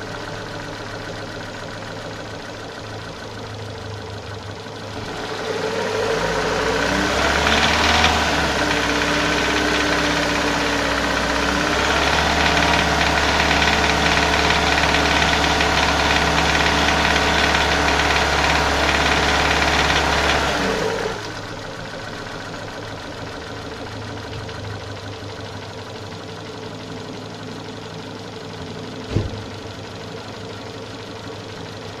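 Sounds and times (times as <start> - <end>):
engine revving with knocking rattle: 0.0 - 32.0.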